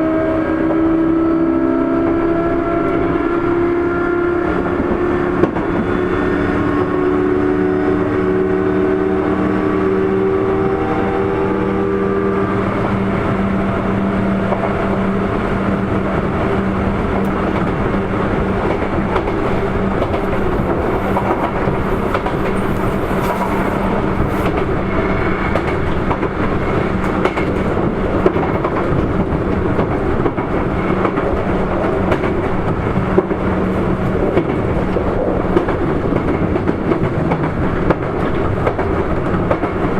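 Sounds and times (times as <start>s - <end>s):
train inverter and motor tones: 0.0s - 27.2s
clickety-clack from rail joints: 2.8s - 8.2s, 12.8s - 39.9s
wheel-on-rail rumble: 4.4s - 39.9s.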